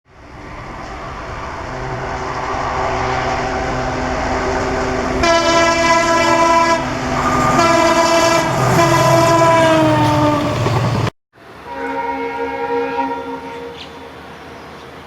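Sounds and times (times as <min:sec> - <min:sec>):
diesel locomotive engine running: 0:00.1 - 0:11.7
locomotive air horn blasts: 0:05.1 - 0:10.6, 0:11.6 - 0:14.2.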